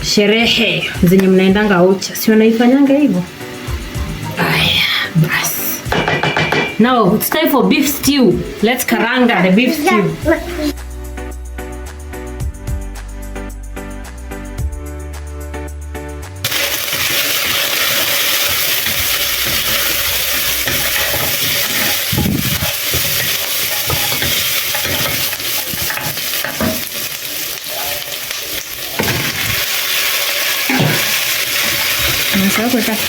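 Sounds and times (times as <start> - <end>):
beef sizzling in a pot: 0.0 - 10.8, 16.4 - 33.0
background music: 0.0 - 27.7
spoon knocking on pot: 5.9 - 6.8, 20.7 - 26.9.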